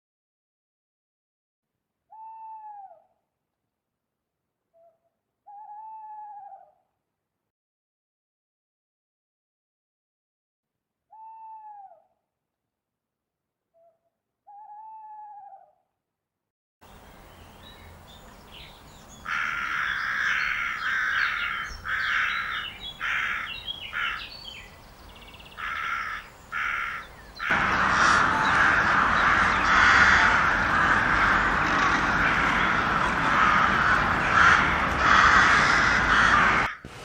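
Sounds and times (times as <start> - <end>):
dense chorus of bird calls: 16.9 - 36.8
harsh cawing bird calls: 18.5 - 36.9.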